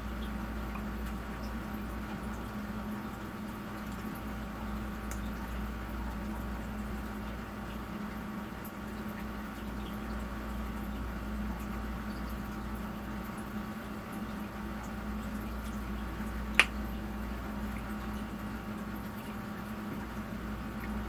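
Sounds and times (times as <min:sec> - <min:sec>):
sharp click: 0:16.6 - 0:16.8.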